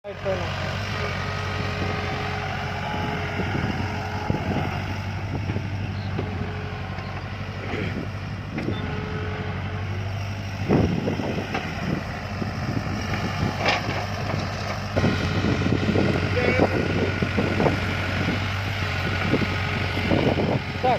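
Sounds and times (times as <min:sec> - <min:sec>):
diesel engine running under load: 0:00.0 - 0:20.9
knocks and clatter of digging: 0:13.1 - 0:15.3.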